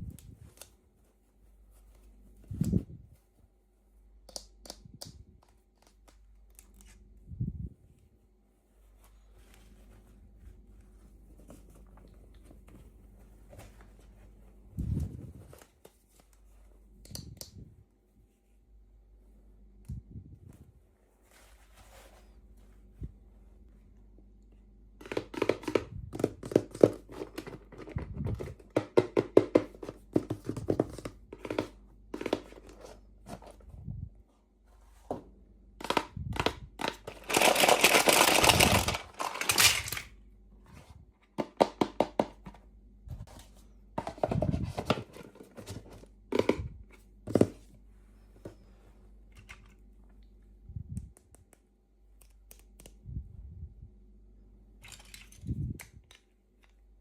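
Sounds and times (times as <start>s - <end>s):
plastic packaging crinkling: 37.0s - 40.1s.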